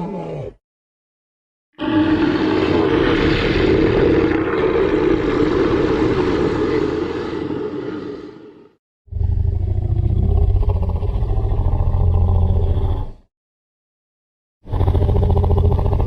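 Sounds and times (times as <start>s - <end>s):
creature roar: 0.0s - 0.6s, 1.8s - 12.7s.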